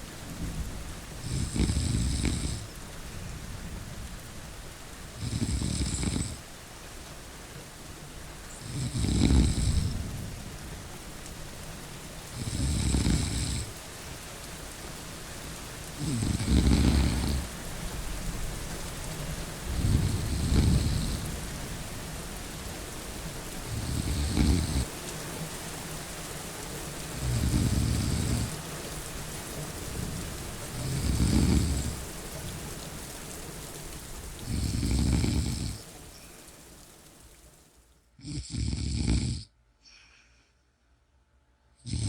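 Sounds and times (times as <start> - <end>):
rain hissing: 0.0 - 40.5
person snoring: 1.2 - 2.7, 5.2 - 6.4, 8.6 - 10.1, 12.4 - 13.7, 16.0 - 17.5, 19.7 - 21.3, 23.7 - 24.9, 27.2 - 28.6, 30.7 - 32.0, 34.4 - 35.8, 38.2 - 40.3.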